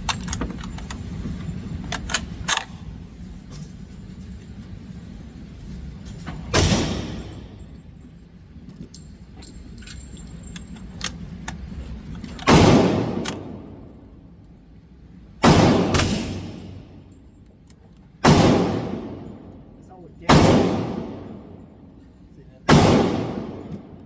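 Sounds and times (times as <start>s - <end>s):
gunshots with ringing tail: 6.5s - 7.6s, 12.4s - 13.9s, 15.4s - 17.1s, 18.2s - 21.8s, 22.6s - 24.0s.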